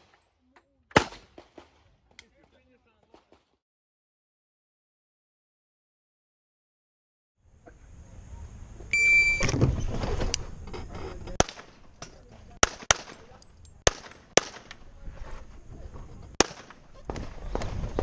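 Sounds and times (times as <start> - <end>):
handgun shots: 0.9 - 1.7, 12.6 - 14.8, 16.4 - 17.2
shot timer beep: 8.9 - 9.5.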